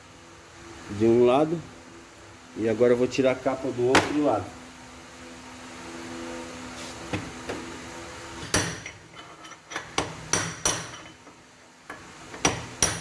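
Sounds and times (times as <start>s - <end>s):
steady hum: 0.0s - 13.0s
hammer striking steel: 8.4s - 9.0s, 10.0s - 11.1s, 12.4s - 13.0s.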